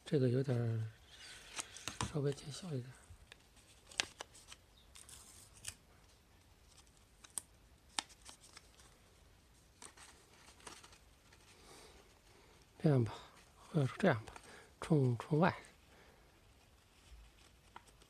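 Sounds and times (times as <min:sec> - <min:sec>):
paper rustling: 0:00.8 - 0:12.5, 0:16.4 - 0:18.0.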